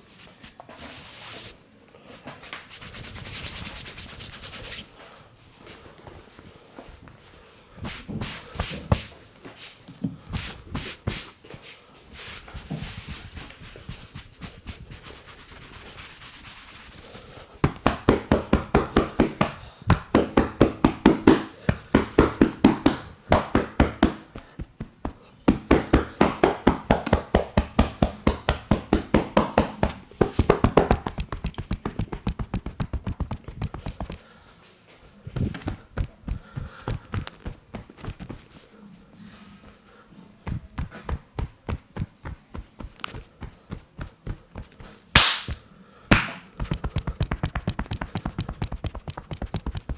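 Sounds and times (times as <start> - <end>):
hands rubbing skin: 12.8 - 34.2, 45.2 - 49.9
percussive hand strikes: 17.6 - 24.4, 25.0 - 34.2, 45.2 - 49.9.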